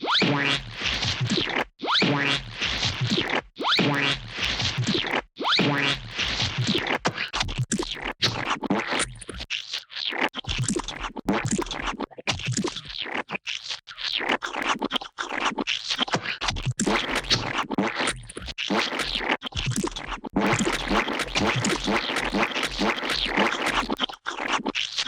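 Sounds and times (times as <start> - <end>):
gooey splats and squelches: 18.6 - 24.7.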